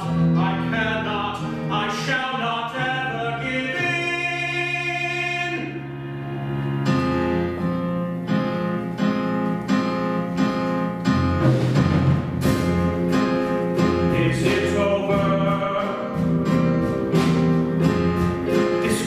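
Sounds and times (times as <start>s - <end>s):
person singing: 0.0s - 6.0s, 14.0s - 16.4s, 18.5s - 19.0s
instrumental repeated chords: 0.0s - 19.0s.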